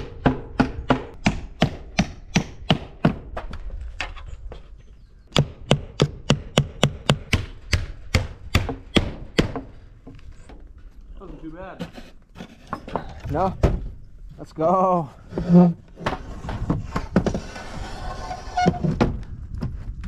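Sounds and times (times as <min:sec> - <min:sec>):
hammer driving nails into wood: 0:05.3 - 0:09.7.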